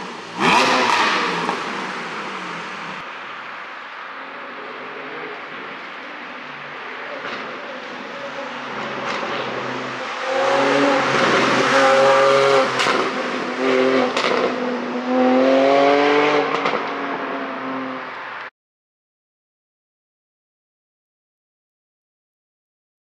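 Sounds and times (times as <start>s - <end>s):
car engine revving: 0.0s - 18.5s
exhaust pops: 0.3s - 14.6s, 16.5s - 17.4s.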